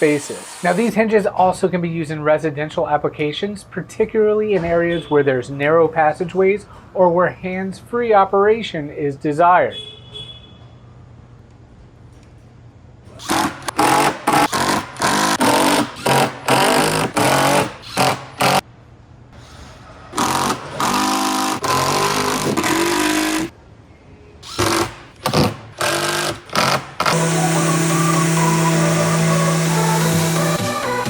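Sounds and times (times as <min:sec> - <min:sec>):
woodworking power tools: 0:00.0 - 0:01.1, 0:13.1 - 0:18.6, 0:20.1 - 0:23.5, 0:24.4 - 0:31.0.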